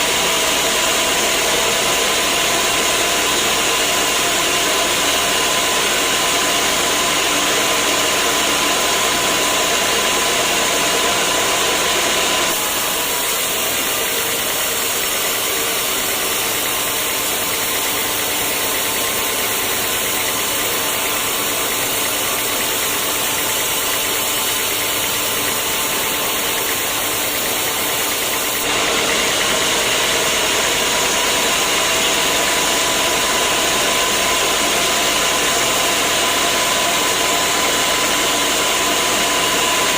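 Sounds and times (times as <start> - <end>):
sawmill machinery humming: 0.0 - 39.9.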